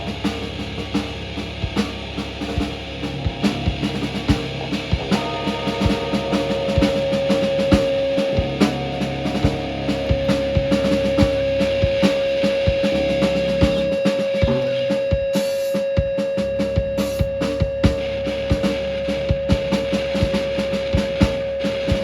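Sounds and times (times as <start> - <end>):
bass guitar: 0.0 - 15.2, 16.2 - 22.0
drum kit beating: 0.0 - 22.0
electric guitar: 0.0 - 22.0
held high guitar note: 3.1 - 14.9.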